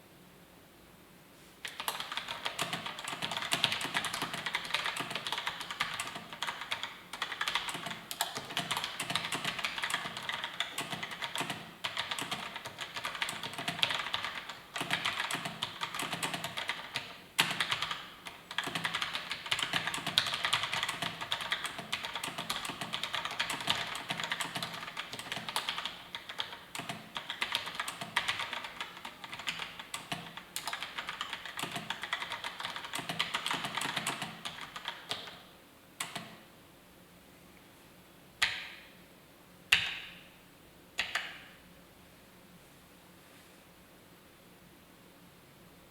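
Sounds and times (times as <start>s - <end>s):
mechanical keyboard typing: 1.6s - 36.4s.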